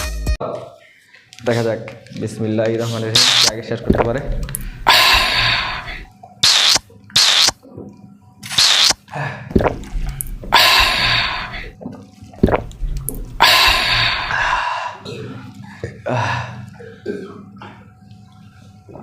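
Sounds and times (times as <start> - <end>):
people gulping and slurping: 3.2 - 6.8, 9.5 - 11.8, 12.4 - 14.4
breathy hissing gasps: 4.5 - 6.1, 10.4 - 11.8, 13.3 - 15.1.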